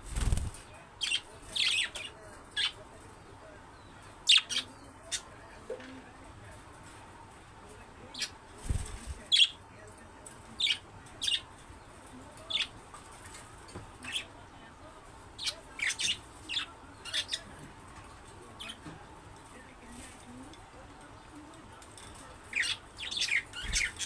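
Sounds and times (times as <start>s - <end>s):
budgerigars chirping: 4.3s - 5.3s.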